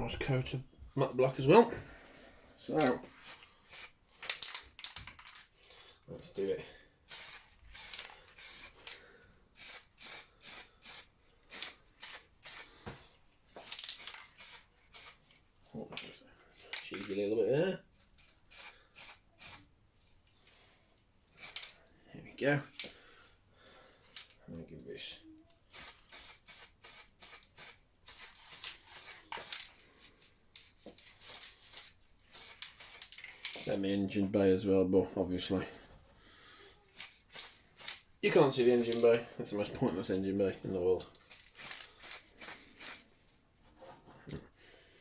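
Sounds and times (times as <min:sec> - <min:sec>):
spray paint hissing in bursts: 0:03.2 - 0:04.0, 0:07.1 - 0:08.9, 0:09.5 - 0:12.8, 0:13.6 - 0:15.3, 0:17.9 - 0:19.7, 0:21.4 - 0:21.7, 0:25.7 - 0:29.7, 0:31.1 - 0:33.2, 0:36.9 - 0:39.0, 0:41.2 - 0:43.1.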